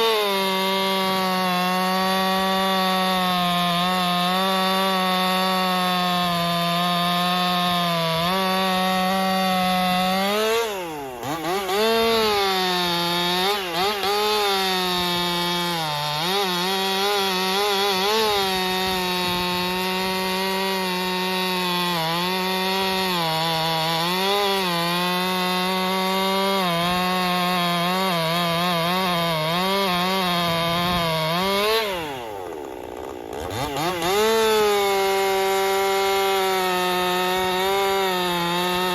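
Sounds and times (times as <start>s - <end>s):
chainsaw cutting at full throttle: 0.0s - 38.9s.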